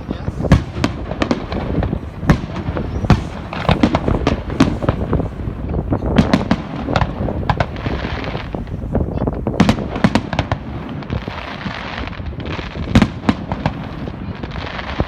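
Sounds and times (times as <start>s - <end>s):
crackling hiss: 0.0s - 15.0s
fireworks bangs and pops: 0.0s - 15.0s.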